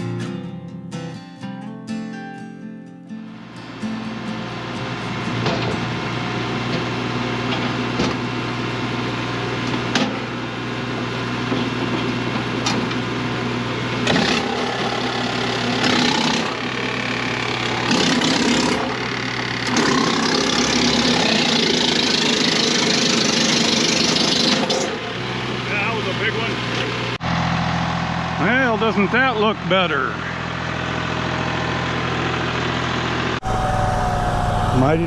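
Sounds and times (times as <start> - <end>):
engine humming: 3.3 - 10.0, 30.5 - 35.0
wood chipper chipping branches: 3.7 - 25.6.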